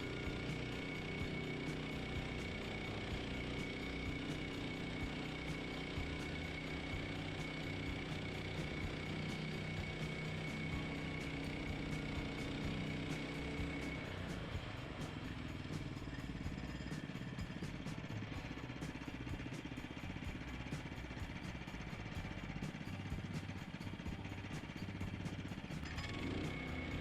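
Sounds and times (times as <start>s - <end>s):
small gasoline engine running: 0.0s - 27.0s.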